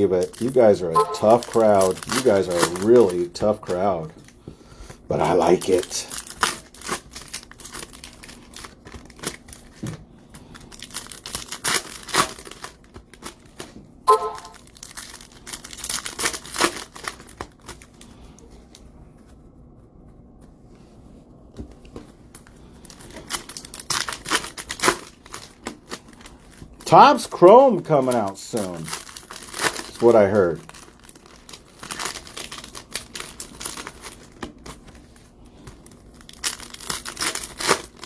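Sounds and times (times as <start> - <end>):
plastic packaging crinkling: 0.0 - 4.4, 5.0 - 18.8, 22.3 - 38.0
brief tone: 1.0 - 1.2, 14.1 - 14.6.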